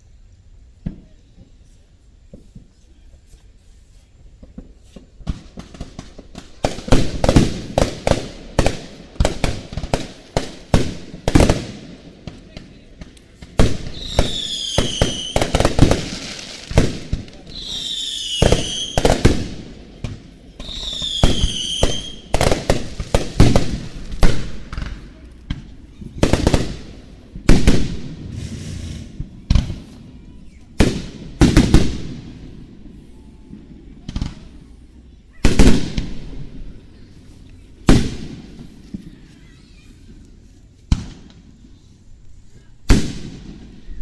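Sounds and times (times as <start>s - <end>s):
fireworks bangs and crackling: 0.6s - 3.6s, 4.2s - 44.0s
fireworks whistles falling in pitch: 13.6s - 25.0s, 25.9s - 33.6s.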